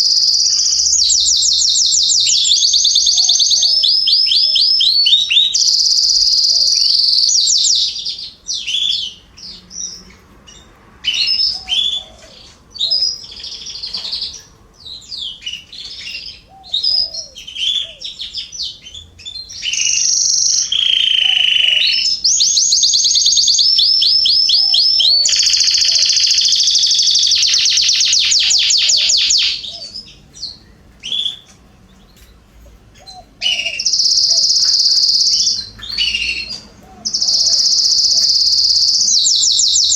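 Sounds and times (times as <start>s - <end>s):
canaries singing trills: 0.0s - 39.9s
soft scattered chirps: 22.4s - 39.9s.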